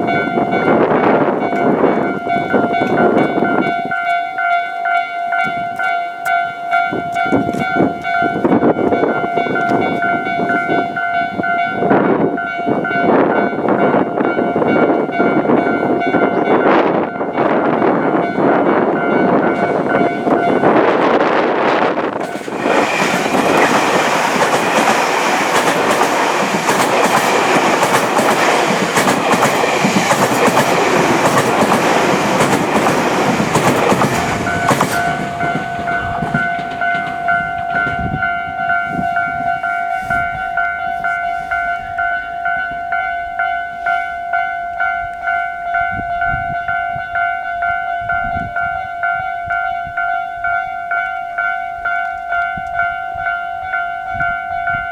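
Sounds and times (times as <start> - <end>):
level crossing warning bell: 0.0 - 54.9
train wheels clacking on rails: 14.6 - 40.4.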